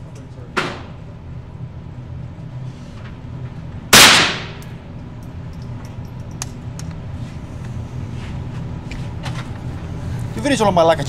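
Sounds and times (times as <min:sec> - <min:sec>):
gunshots: 0:04.0 - 0:04.6.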